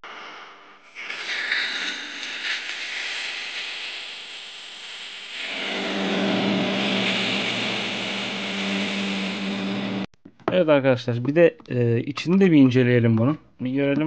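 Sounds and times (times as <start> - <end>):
loud hiss from speaker: 1.0 - 10.0.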